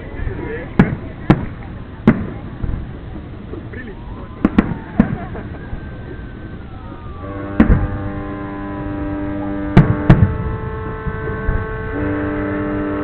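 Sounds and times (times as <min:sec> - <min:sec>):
firework bangs: 0:00.6 - 0:12.4
ship horns sounding: 0:05.8 - 0:13.0.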